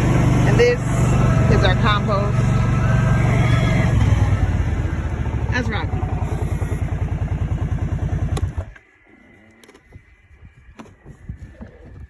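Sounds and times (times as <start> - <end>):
vehicle engine idling: 0.0 - 8.9.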